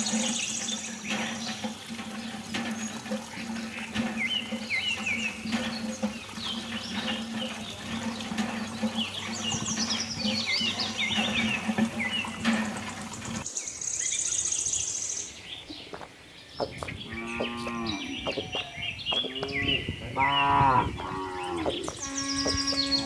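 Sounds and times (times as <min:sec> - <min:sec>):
small birds chirping: 0:00.0 - 0:23.0.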